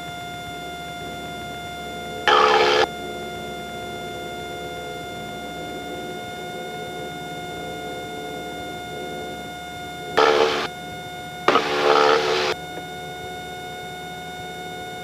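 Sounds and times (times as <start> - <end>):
airplane engine and propeller drone: 0.0 - 14.0
high whine: 0.9 - 12.8
loud burst of noise: 2.3 - 2.9, 10.2 - 10.7, 11.5 - 12.6.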